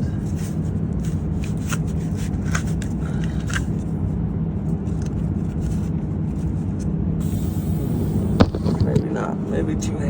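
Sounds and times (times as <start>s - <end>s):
light clicks and scrapes of plug: 1.0s - 3.8s
truck engine idling: 7.2s - 9.3s.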